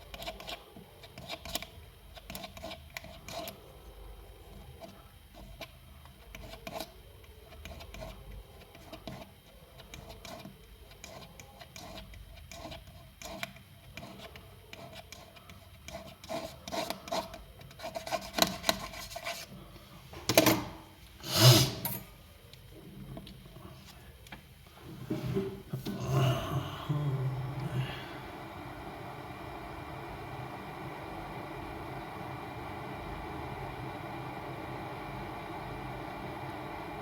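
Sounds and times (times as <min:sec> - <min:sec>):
hand tools scraping: 0:21.2 - 0:22.1.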